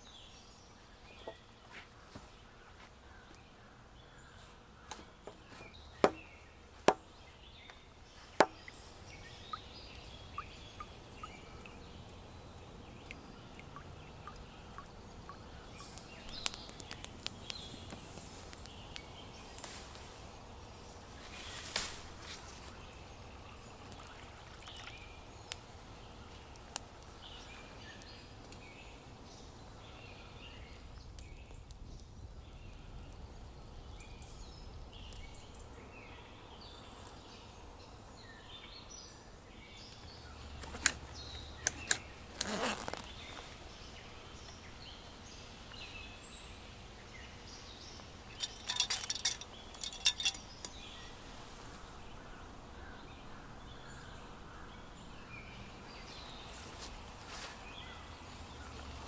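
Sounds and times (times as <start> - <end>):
faint outdoor background: 0.0 - 59.0.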